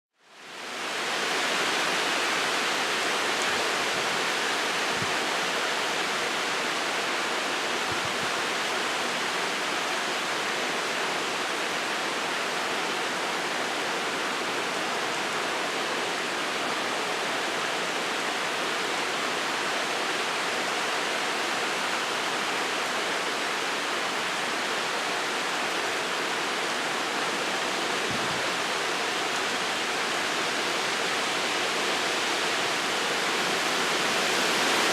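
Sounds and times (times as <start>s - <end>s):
rain and wind: 0.2s - 34.9s.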